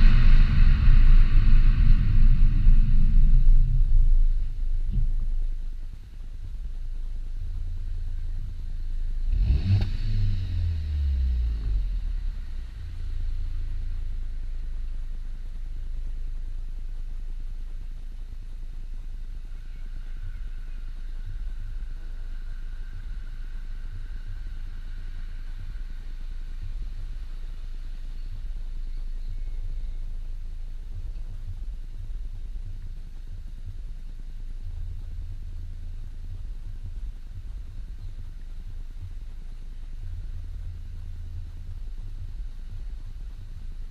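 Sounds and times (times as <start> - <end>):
car engine rumbling and revving: 0.0 - 29.1, 29.8 - 43.9.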